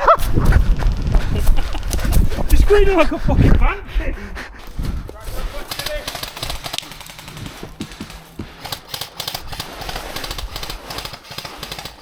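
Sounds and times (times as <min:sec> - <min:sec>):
airsoft guns firing: 0:05.5 - 0:12.0.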